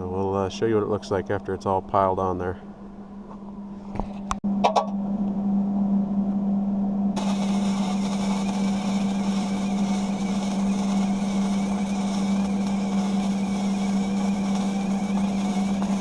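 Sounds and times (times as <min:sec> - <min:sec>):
low hum: 0:00.0 - 0:16.0
welding arc sizzling: 0:07.2 - 0:16.0.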